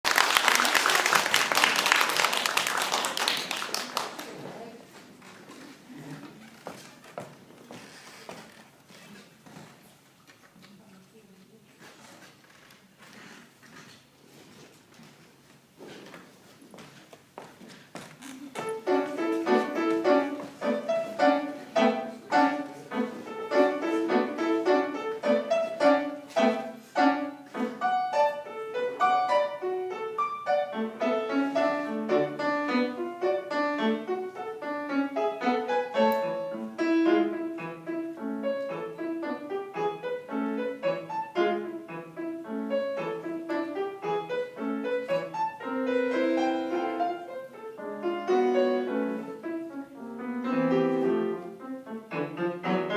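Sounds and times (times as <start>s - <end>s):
solo piano piece: 18.7s - 52.9s.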